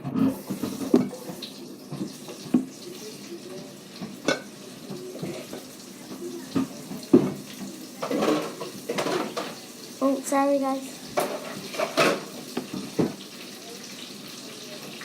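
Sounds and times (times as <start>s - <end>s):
dishes and utensils clinking: 0.0s - 3.2s, 4.0s - 9.8s, 11.0s - 13.4s.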